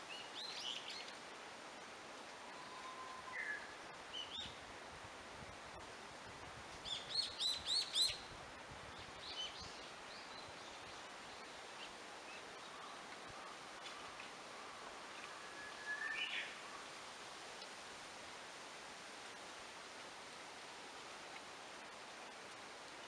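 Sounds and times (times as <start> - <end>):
faint hiss: 0.0 - 23.0
birds singing: 9.3 - 16.9.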